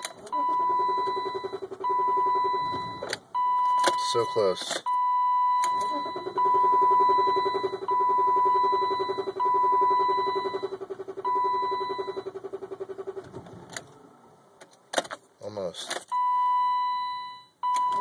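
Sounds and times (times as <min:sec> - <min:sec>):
car engine cranking: 0:00.0 - 0:05.0, 0:05.6 - 0:15.3
high electronic beeps: 0:00.0 - 0:12.3.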